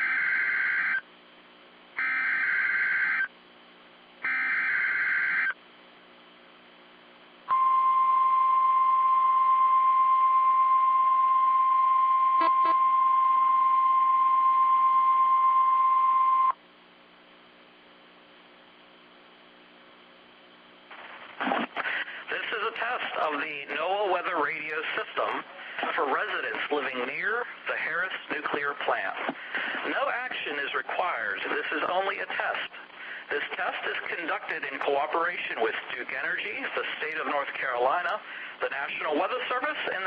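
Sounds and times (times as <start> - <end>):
loud single-pitch alarm tone: 0.0 - 1.0, 2.0 - 3.3, 4.2 - 5.6, 7.5 - 16.6
buzzy warbling data bursts: 12.4 - 12.8.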